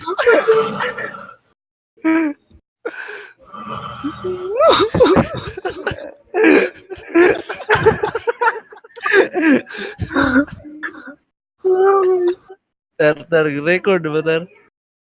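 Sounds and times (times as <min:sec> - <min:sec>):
people laughing: 0:00.0 - 0:01.3, 0:04.5 - 0:10.8
voices: 0:00.0 - 0:01.4, 0:03.6 - 0:14.7
man snoring: 0:00.2 - 0:01.4, 0:03.2 - 0:05.0.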